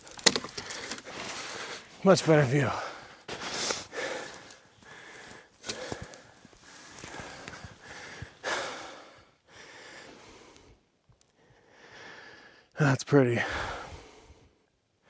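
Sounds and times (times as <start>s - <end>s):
man breathing hard: 2.8s - 10.8s, 11.4s - 12.7s, 13.4s - 14.7s
sniffs: 3.3s - 4.0s.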